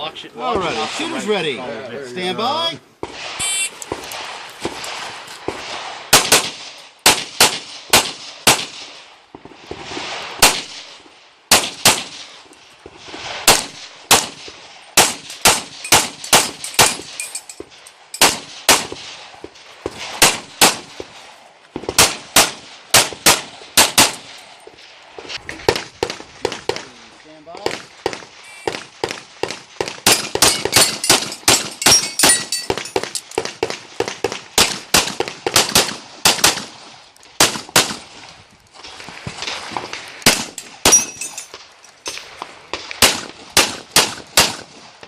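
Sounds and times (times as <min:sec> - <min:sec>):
rapid pistol shots: 0:04.1 - 0:09.0, 0:10.4 - 0:10.8, 0:11.5 - 0:12.3, 0:13.4 - 0:17.2, 0:18.2 - 0:19.2, 0:20.0 - 0:21.1, 0:21.9 - 0:24.4, 0:27.6 - 0:36.8, 0:37.4 - 0:38.0, 0:40.2 - 0:41.0, 0:42.9 - 0:44.8.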